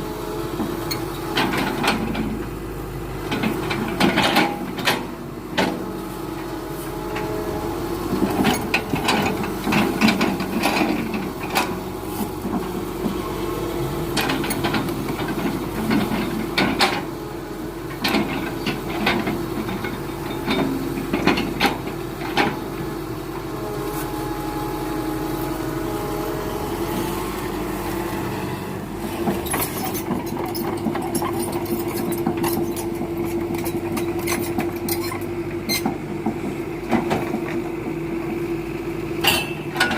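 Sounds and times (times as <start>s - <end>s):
excavator diesel engine running: 0.0s - 39.9s
machine knocks and clanks: 14.2s - 17.1s, 17.9s - 22.6s.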